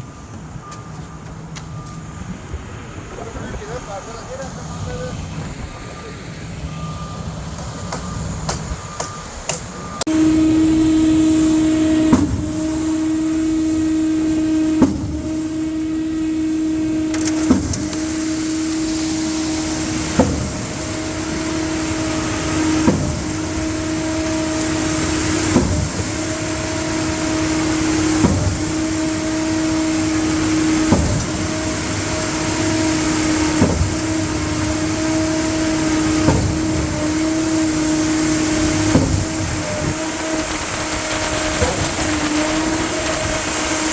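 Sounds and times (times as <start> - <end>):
pump mechanical hum: 0.0 - 43.9
sharp pump knock: 38.9 - 39.4.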